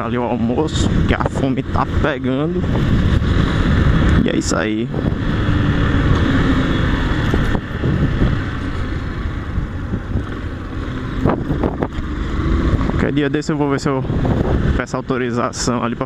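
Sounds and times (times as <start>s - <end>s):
wind noise on microphone: 0.0s - 15.1s
motorcycle engine running: 0.0s - 15.3s.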